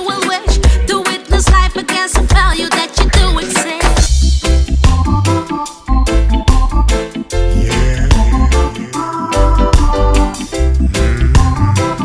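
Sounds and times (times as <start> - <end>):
instrumental reggae music: 0.0 - 12.0.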